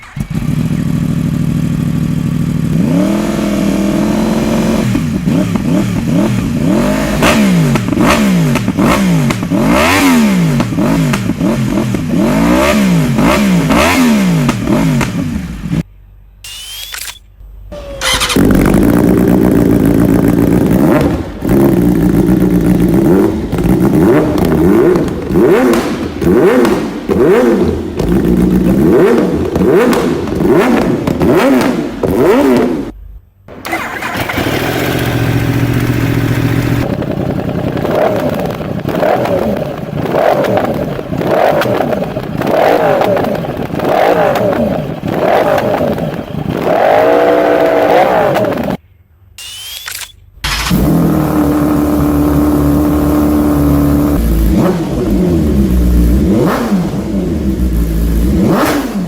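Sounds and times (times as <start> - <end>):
motorcycle engine revving: 0.0 - 15.9, 17.7 - 48.8, 50.4 - 59.0
engine idling: 33.5 - 38.9.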